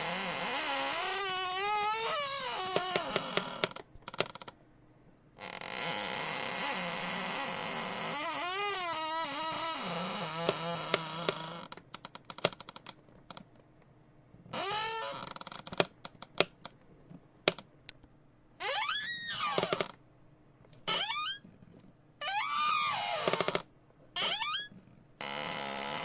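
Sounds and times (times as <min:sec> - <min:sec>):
chair squeaking and creaking: 0:00.0 - 0:04.5, 0:05.4 - 0:13.0, 0:14.5 - 0:16.5, 0:18.6 - 0:20.0, 0:20.8 - 0:26.0.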